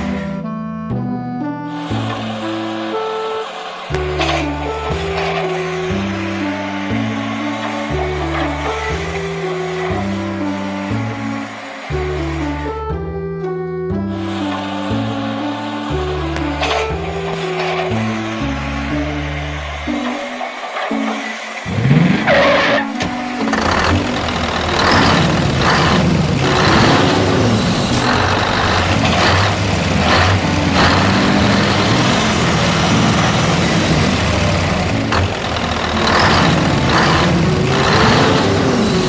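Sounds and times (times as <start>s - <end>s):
background music: 0.0s - 39.0s
vehicle engine running: 1.8s - 13.0s, 13.9s - 39.0s.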